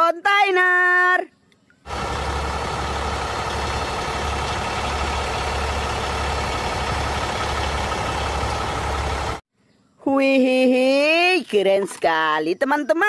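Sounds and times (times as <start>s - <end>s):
truck engine idling: 1.9s - 9.4s.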